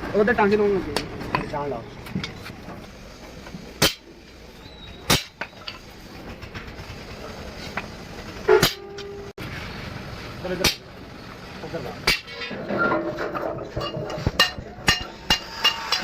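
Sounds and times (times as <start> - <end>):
workshop background noise: 0.0 - 16.0.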